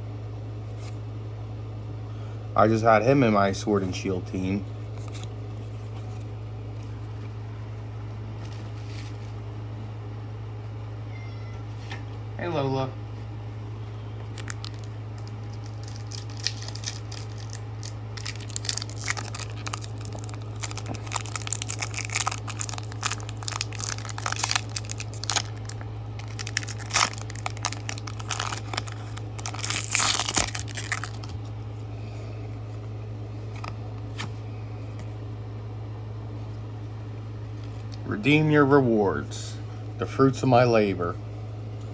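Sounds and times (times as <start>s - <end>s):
low electrical hum: 0.0s - 41.9s
foil wrapper tearing and crinkling: 14.3s - 31.6s.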